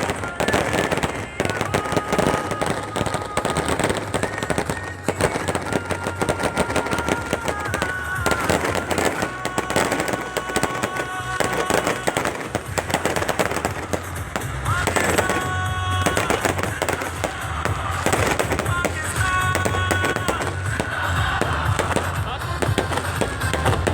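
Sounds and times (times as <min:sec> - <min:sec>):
fireworks banging and crackling: 0:00.0 - 0:23.9
music playing: 0:00.0 - 0:23.9.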